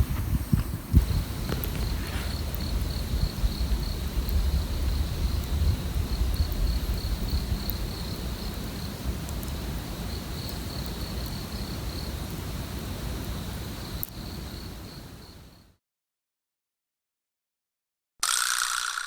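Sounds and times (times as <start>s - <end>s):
low rumbling noise: 0.0s - 9.8s
crickets chirring: 0.1s - 15.8s.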